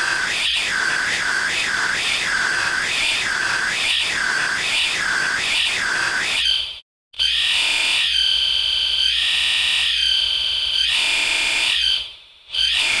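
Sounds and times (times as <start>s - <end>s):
shrill electronic alarm screech: 0.0s - 13.0s.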